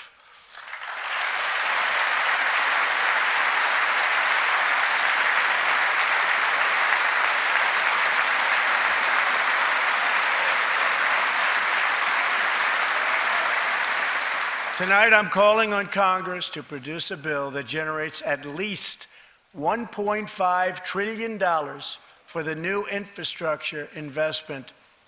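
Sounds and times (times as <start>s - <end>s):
large audience applauding: 0.0s - 15.6s.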